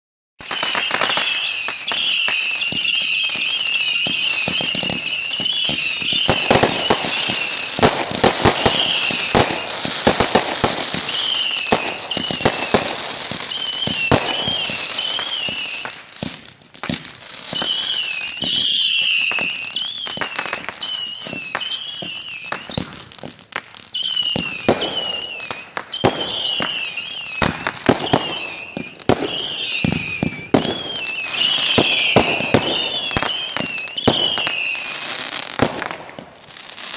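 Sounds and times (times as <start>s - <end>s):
high wavering whistle: 0.4s - 7.8s, 11.1s - 12.8s, 13.5s - 15.9s, 17.5s - 23.2s, 24.0s - 35.1s
fireworks bangs and crackling: 0.4s - 36.9s.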